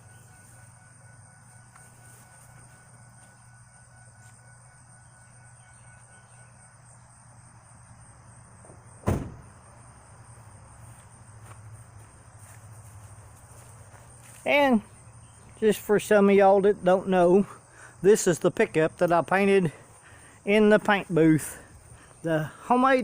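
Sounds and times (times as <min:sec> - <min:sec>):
vehicle door slamming: 0:08.7 - 0:09.6.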